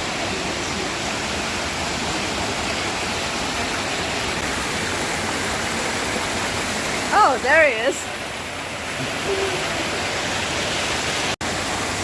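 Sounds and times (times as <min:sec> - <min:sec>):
flowing water rushing: 0:00.0 - 0:12.0.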